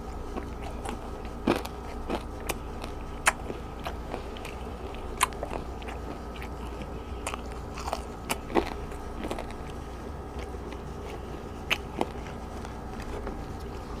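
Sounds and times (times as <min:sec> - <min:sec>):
chewing crispy food: 0:00.0 - 0:14.0.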